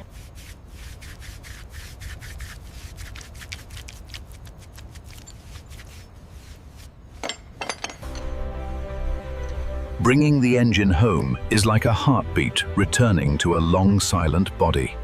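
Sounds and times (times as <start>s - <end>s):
sanding strokes on bodywork: 0.0s - 7.1s.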